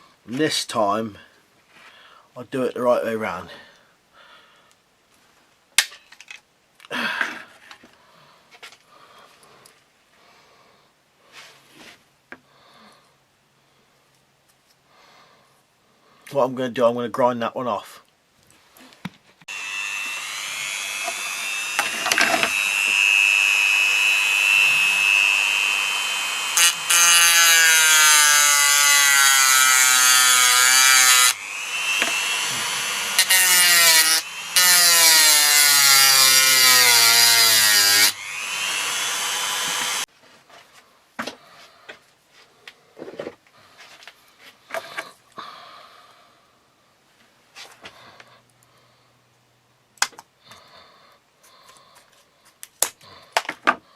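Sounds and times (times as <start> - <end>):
power grinder grinding metal: 19.5 - 40.1.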